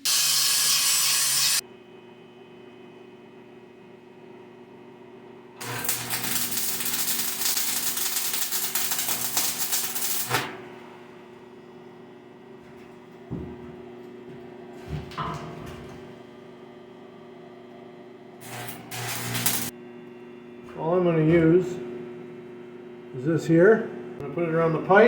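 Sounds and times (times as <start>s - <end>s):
angle grinder grinding steel: 0.0s - 1.6s, 18.4s - 19.7s.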